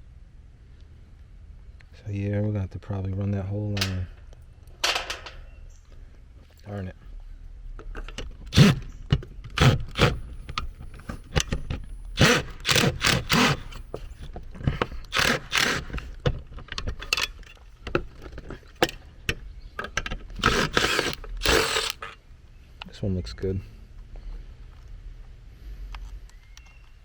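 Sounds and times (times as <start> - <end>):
tools clicking and scraping metal: 4.8 - 5.5, 7.8 - 22.2.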